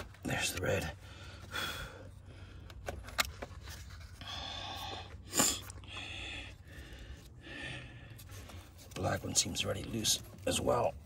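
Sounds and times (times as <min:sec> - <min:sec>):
man breathing heavily: 0:00.9 - 0:08.9.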